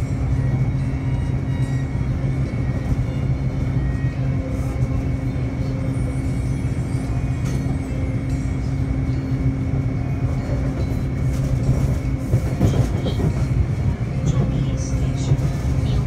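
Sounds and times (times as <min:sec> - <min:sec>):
train rumble: 0:00.0 - 0:16.0.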